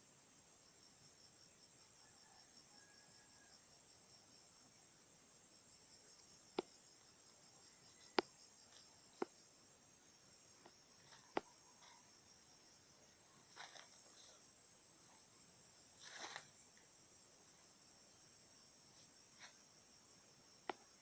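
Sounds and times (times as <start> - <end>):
insects chirring: 0.0 - 21.0
soft rustle: 13.4 - 14.4, 16.0 - 16.9, 18.9 - 19.6.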